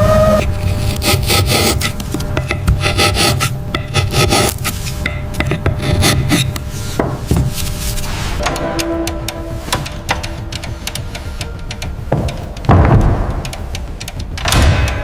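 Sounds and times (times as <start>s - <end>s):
rasping and scraping strokes: 0.0s - 14.4s
low steady hum: 0.0s - 15.0s.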